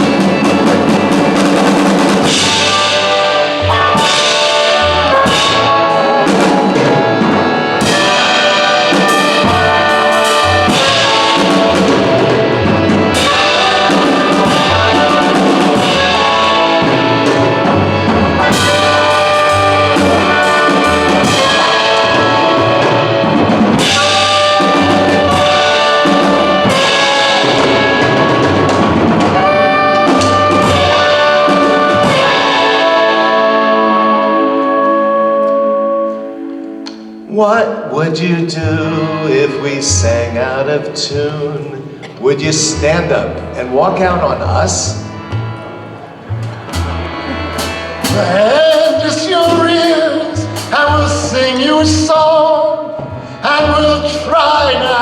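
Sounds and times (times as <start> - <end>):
drum kit beat: 0.0 - 34.4, 39.9 - 55.0
brass instruments: 0.0 - 55.0.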